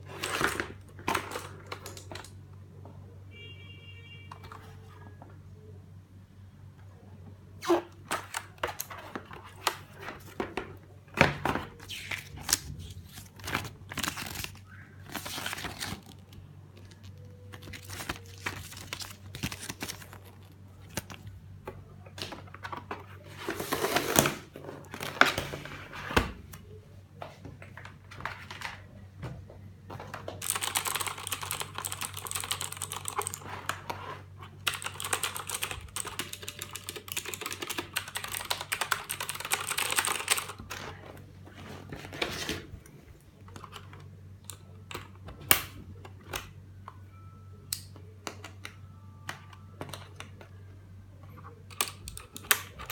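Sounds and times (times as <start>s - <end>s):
packaging rustling: 11.7s - 21.3s
typing on clicky keyboard: 30.4s - 33.4s, 34.6s - 40.6s.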